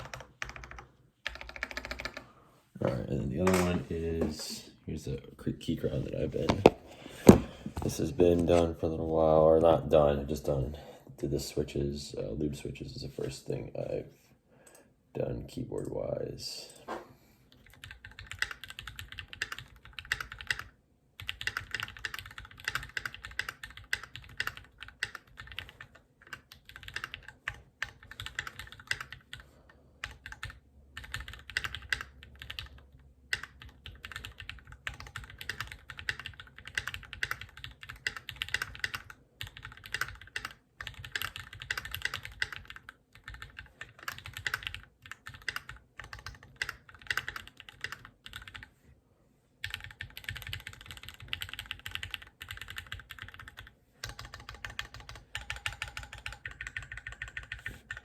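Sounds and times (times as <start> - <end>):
typing on mechanical keyboard: 0.0 - 2.3, 17.5 - 48.7, 49.6 - 58.0.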